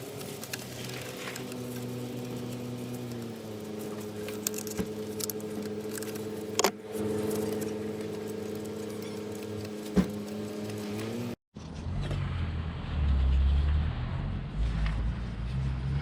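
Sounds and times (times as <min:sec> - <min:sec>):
steady mechanical hum: 0:00.0 - 0:11.4.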